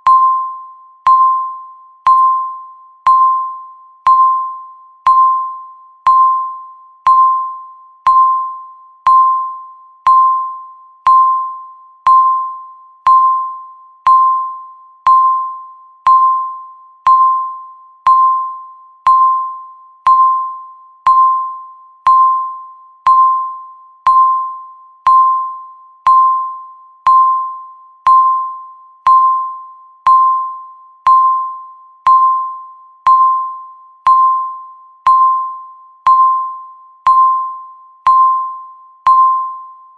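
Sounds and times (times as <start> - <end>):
countdown timer beeps: 0.0 - 39.9.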